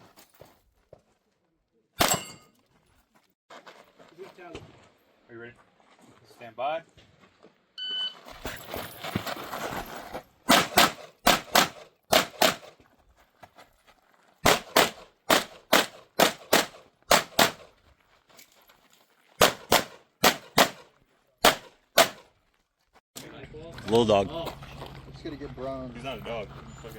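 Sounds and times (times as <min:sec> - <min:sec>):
pistol shots in quick pairs: 0:10.5 - 0:12.7, 0:14.4 - 0:17.7, 0:19.4 - 0:22.2.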